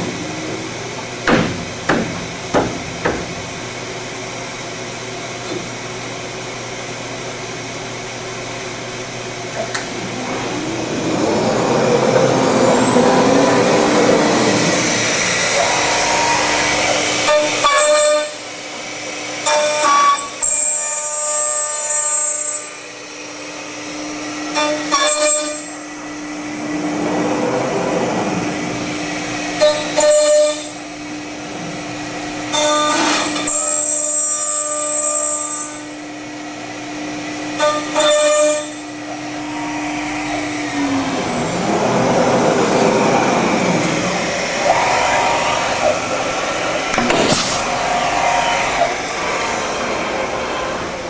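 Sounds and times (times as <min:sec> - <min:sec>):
machine spindle hum: 0:00.0 - 0:17.6, 0:38.6 - 0:51.0
cutter biting into metal: 0:46.9 - 0:47.8.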